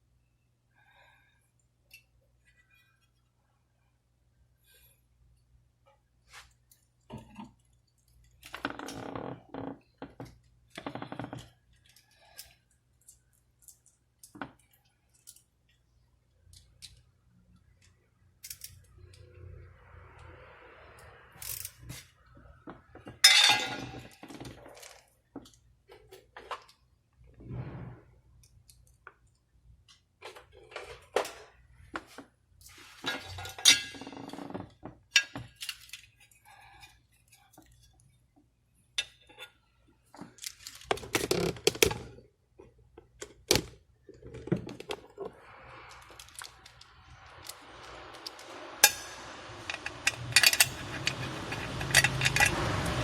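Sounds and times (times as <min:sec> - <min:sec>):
metallic clicks of tools: 0:47.4 - 0:53.0.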